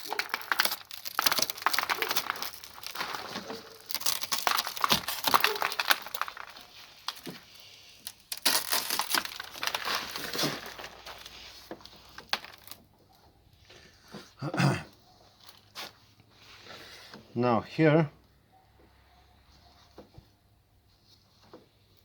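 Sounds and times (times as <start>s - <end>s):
broken glass crunching: 0.0s - 11.3s, 12.0s - 12.8s.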